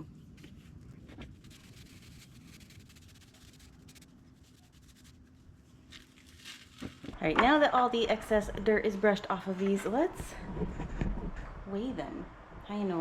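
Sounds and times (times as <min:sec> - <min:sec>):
brush scratching soil off potatoes: 0:00.0 - 0:07.2.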